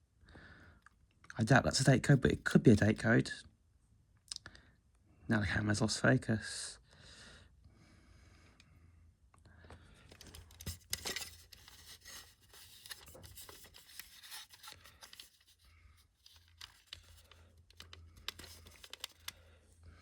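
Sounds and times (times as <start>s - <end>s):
plastic parts rubbing and scraping: 10.1s - 19.4s.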